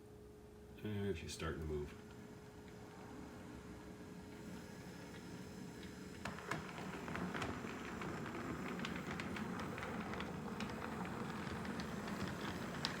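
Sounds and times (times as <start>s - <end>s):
wheels clicking on rails: 4.9s - 13.0s.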